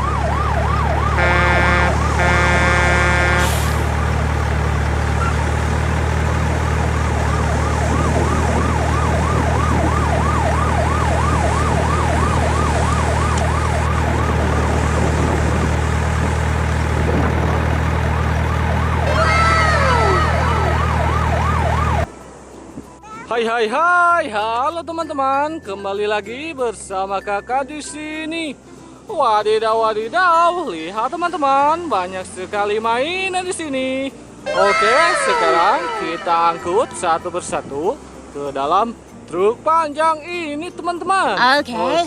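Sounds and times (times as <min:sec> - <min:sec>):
siren wailing: 0:00.0 - 0:04.0, 0:06.9 - 0:15.1, 0:17.9 - 0:22.1, 0:34.4 - 0:37.7
horn sounding: 0:01.1 - 0:03.9, 0:34.4 - 0:37.9
falling tones: 0:34.4 - 0:37.7.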